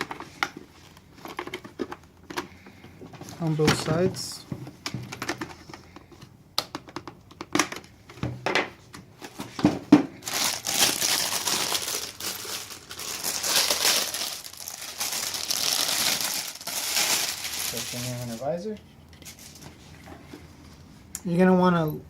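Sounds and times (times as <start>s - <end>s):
plastic crinkling and rustling: 9.2s - 20.9s.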